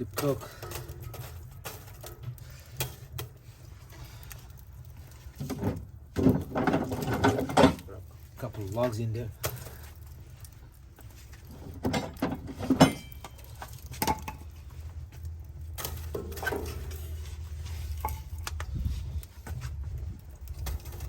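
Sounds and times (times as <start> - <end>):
logs knocking against steel firebox: 4.4 - 8.1, 11.3 - 17.2
steady low rumble: 14.3 - 21.0.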